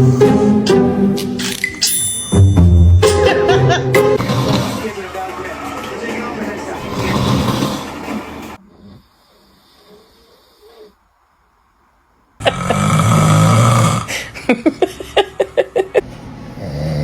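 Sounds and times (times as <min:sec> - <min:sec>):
man snoring: 0:06.8 - 0:08.0, 0:12.4 - 0:14.4, 0:16.6 - 0:17.0.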